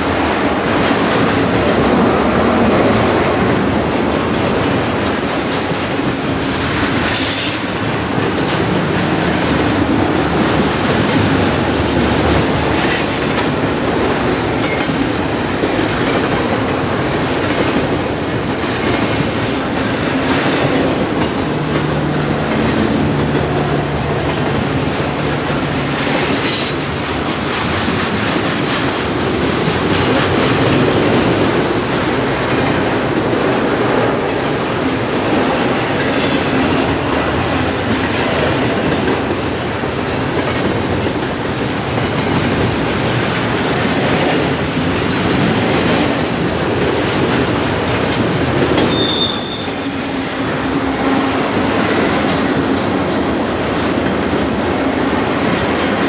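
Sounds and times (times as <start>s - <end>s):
railway cars rumbling past: 0.0s - 56.0s
high-pitched wheel squeal: 26.4s - 27.0s, 48.4s - 50.9s.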